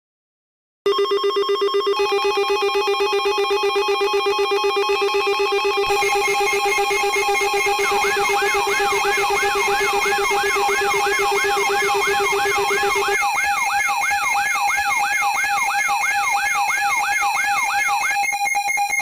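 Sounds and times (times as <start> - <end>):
electronic alarm steady tone: 0.9 - 19.0
siren-like wail: 2.0 - 19.0
lower steady tone: 5.6 - 13.2.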